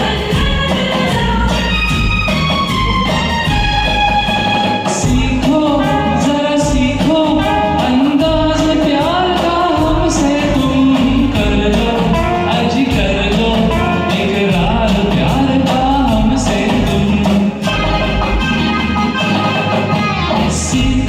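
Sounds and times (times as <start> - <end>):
instrumental backing track: 0.0 - 21.0
man singing film song: 4.8 - 17.7, 20.5 - 21.0.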